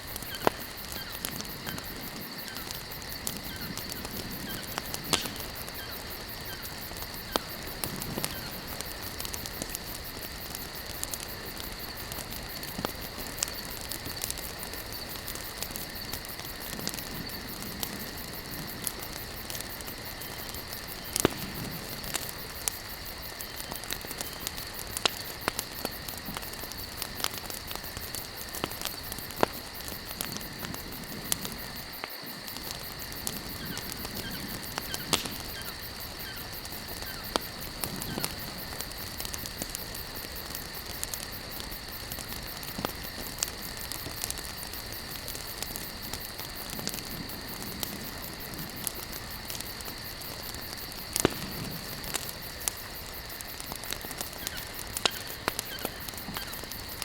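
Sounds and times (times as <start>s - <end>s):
campfire crackling and popping: 0.0s - 57.0s
high-pitched insect chorus: 0.0s - 57.0s.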